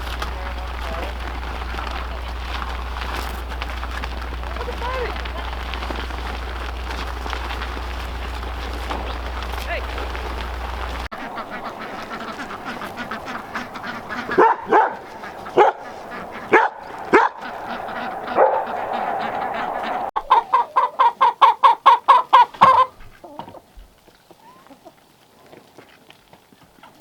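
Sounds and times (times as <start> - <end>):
steady background noise: 0.0 - 20.2
ducks quacking: 0.0 - 23.4.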